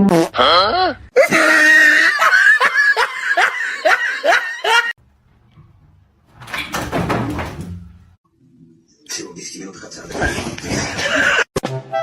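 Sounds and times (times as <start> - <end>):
person laughing: 1.2 - 4.9, 10.6 - 11.5.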